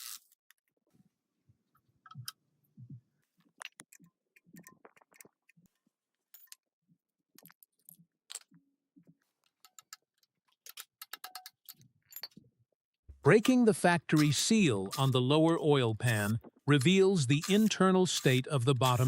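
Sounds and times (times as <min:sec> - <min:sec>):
hand tools clicking and tapping metal: 0:09.6 - 0:12.4, 0:13.4 - 0:19.0.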